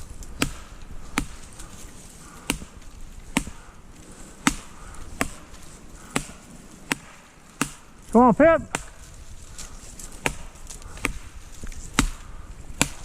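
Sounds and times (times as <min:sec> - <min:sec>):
stick knocking on tree trunk: 0:00.4 - 0:03.7.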